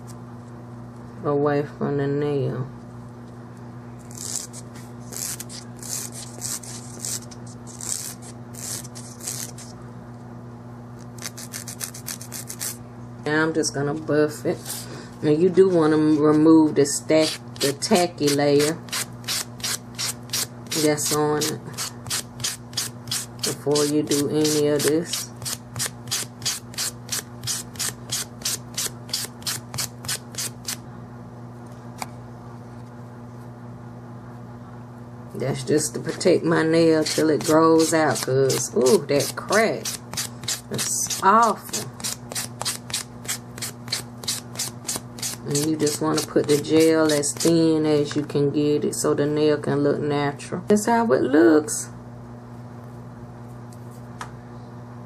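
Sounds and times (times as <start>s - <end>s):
steady low hum: 0.0s - 55.0s
nail file rasping on fingernail: 4.1s - 9.7s, 11.2s - 12.8s, 17.2s - 30.8s, 37.0s - 47.5s.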